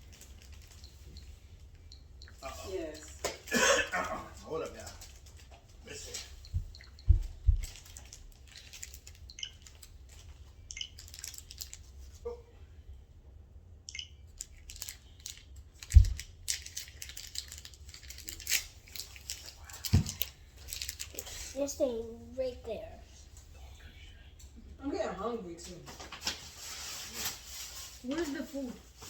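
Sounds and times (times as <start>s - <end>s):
wrapping paper rustling and tearing: 7.7s - 10.3s, 14.5s - 21.6s, 25.9s - 29.0s.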